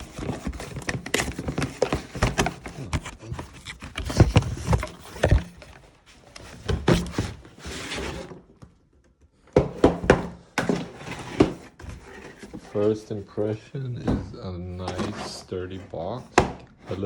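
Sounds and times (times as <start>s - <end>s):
packaging rustling: 0.0s - 7.3s.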